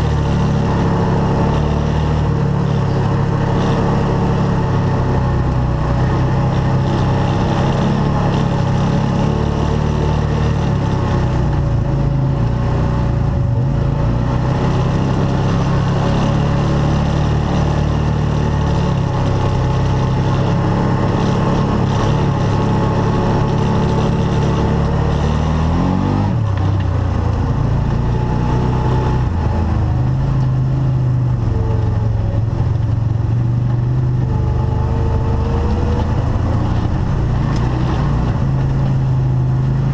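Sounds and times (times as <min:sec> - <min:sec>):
off-road vehicle engine running: 0:00.0 - 0:39.9.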